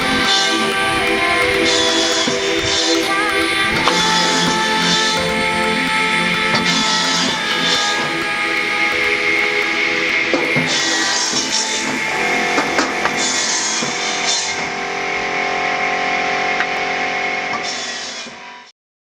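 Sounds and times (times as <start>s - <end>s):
background guitar music: 0.0s - 14.2s.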